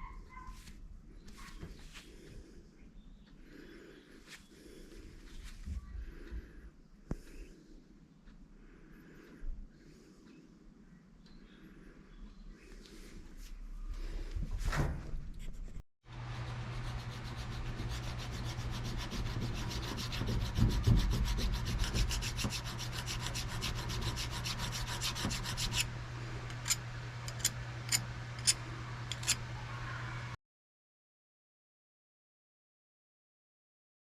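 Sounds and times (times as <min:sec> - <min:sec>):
steady low hum: 0:00.6 - 0:30.4
rasping strokes on metal: 0:16.3 - 0:25.9, 0:26.5 - 0:29.5.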